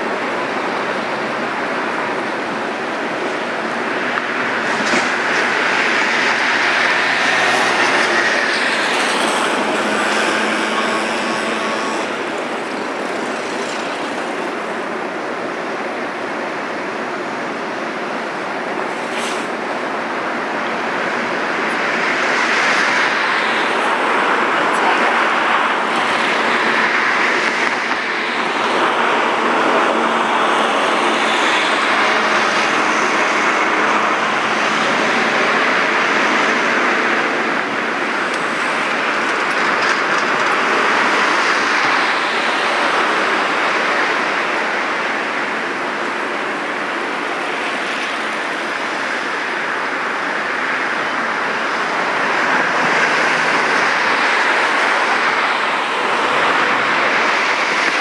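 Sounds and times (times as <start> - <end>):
heavy machinery running: 3.0 - 49.2
harsh hiss: 5.1 - 58.0.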